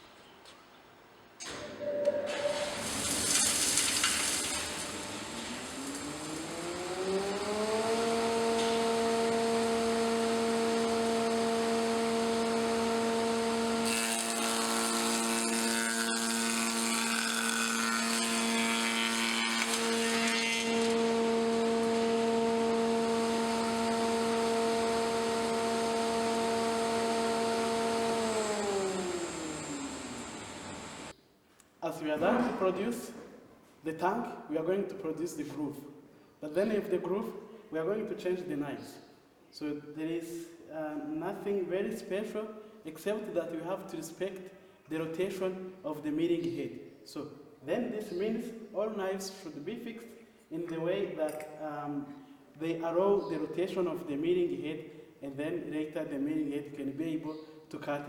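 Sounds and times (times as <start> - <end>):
board being cut: 2.4 - 31.1
spindle moulder whine: 20.4 - 31.1.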